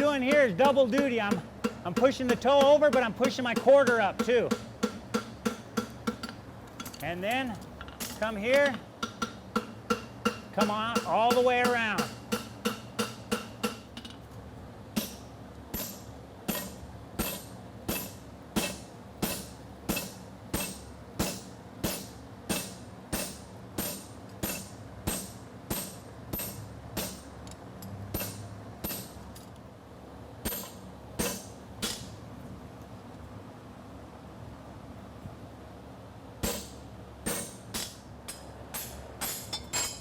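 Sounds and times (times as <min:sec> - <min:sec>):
hammer striking steel on anvil: 0:00.0 - 0:07.0, 0:08.5 - 0:14.1, 0:15.0 - 0:27.3, 0:28.1 - 0:29.2, 0:30.4 - 0:32.2, 0:36.4 - 0:40.0.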